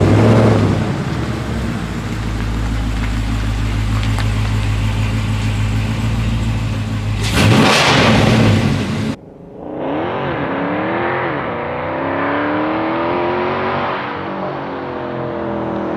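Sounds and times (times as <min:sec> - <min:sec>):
car engine idling with low rumble: 0:00.0 - 0:07.4
engine revving: 0:00.0 - 0:15.9.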